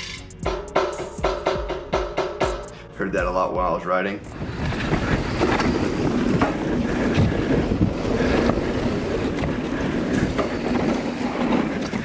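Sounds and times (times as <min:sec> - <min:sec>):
wind buffeting microphone: 0:04.2 - 0:12.0
bike clacks and rattles: 0:04.3 - 0:12.0.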